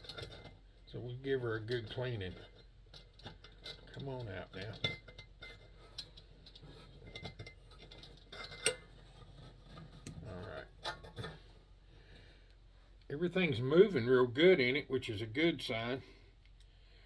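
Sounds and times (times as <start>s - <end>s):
light metallic clicks and scraping: 0.0s - 13.6s.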